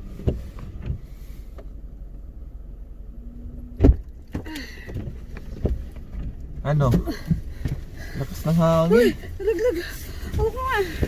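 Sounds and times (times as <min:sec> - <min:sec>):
vehicle engine rumbling: 0:00.0 - 0:11.0
loud thump: 0:03.8 - 0:04.5.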